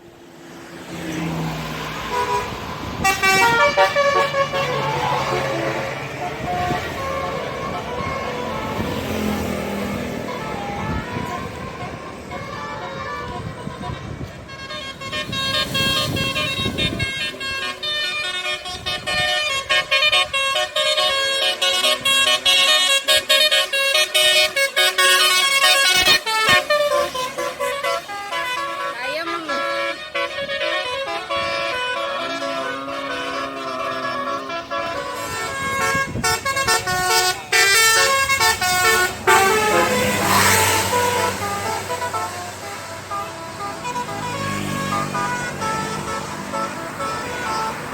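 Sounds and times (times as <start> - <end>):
low engine hum: 0.0 - 21.1
low vehicle engine rumble: 0.0 - 47.9
multi-tone musical bus horn: 0.8 - 47.9.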